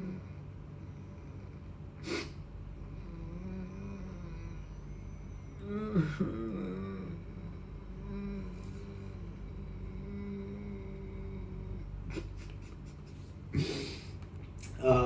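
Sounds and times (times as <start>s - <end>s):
person whimpering and sobbing: 5.6s - 9.2s, 10.0s - 14.1s
person breathing: 13.6s - 14.2s.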